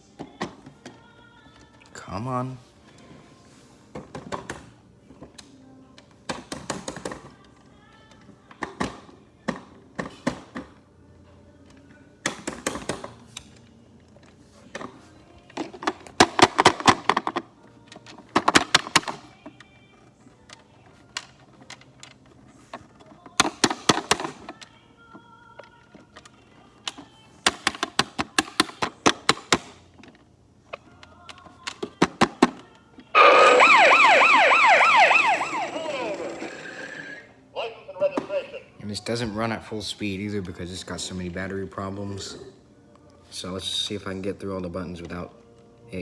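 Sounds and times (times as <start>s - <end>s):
toy car sound effects: 33.2s - 38.6s.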